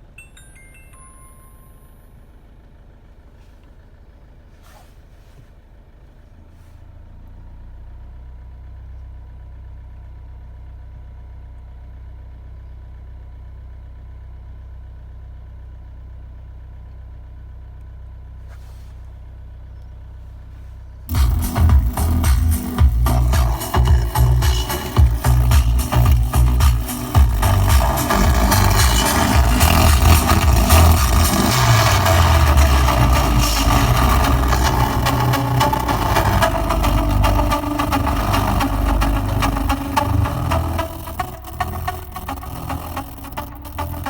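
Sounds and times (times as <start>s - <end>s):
car cabin hum: 1.5s - 9.1s, 17.8s - 44.0s
loud music from car stereo: 21.1s - 44.0s.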